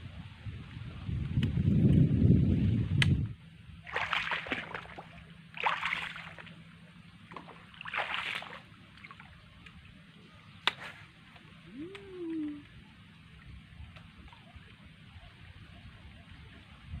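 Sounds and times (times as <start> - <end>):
paddle sloshing in water: 3.8 - 6.6, 7.2 - 10.0.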